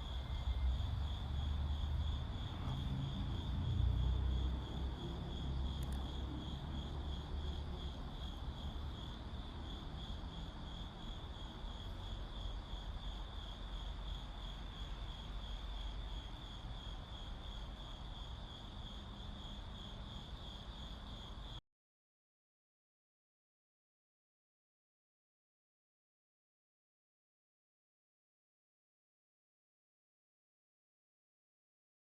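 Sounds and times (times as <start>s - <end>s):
crickets chirping: 0.0s - 21.6s.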